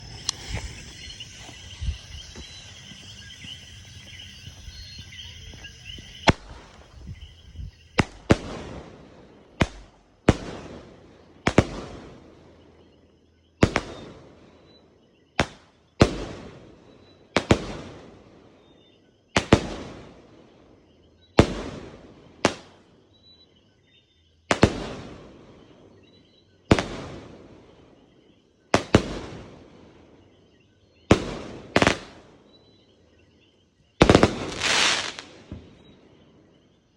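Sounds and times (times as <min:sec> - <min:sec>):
firework fuse hissing: 0:00.0 - 0:10.7, 0:34.0 - 0:35.7
firework shots: 0:00.0 - 0:12.4, 0:13.6 - 0:14.3, 0:15.4 - 0:16.8, 0:17.4 - 0:18.2, 0:19.4 - 0:20.2, 0:21.4 - 0:22.8, 0:24.5 - 0:25.3, 0:26.7 - 0:27.4, 0:28.8 - 0:29.8, 0:31.1 - 0:32.4, 0:34.0 - 0:35.9.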